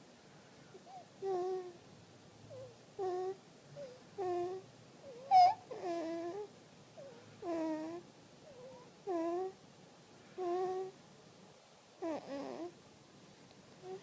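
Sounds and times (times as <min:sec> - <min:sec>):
baby snoring with squeaky grunts: 0:00.9 - 0:01.8, 0:02.5 - 0:09.6, 0:10.4 - 0:11.0, 0:12.0 - 0:12.8.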